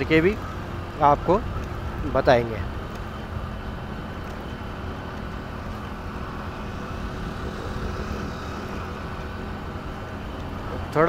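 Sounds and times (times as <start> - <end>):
motorcycle engine running: 0.0 - 11.0
wind rush: 2.7 - 10.7.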